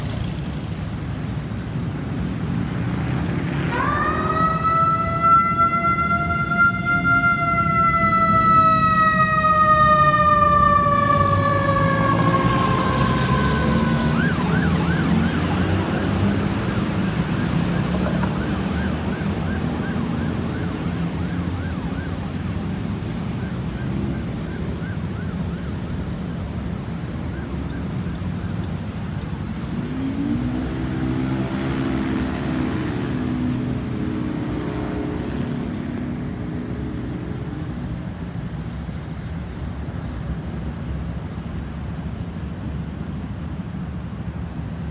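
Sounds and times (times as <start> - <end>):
road traffic rumble: 0.0 - 44.9
ambulance siren yelping: 3.6 - 28.6.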